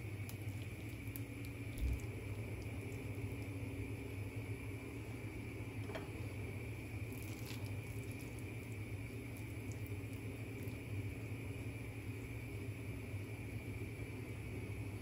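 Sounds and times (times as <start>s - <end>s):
onions squishing: 0.0s - 4.4s, 6.8s - 11.4s
steady low hum: 0.0s - 15.0s.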